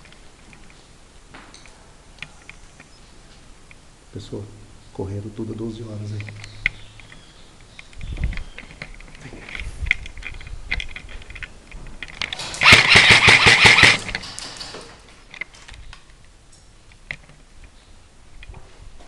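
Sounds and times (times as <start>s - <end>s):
faint clicks and knocks: 6.1s - 17.8s
airsoft rifle automatic fire: 12.4s - 14.8s.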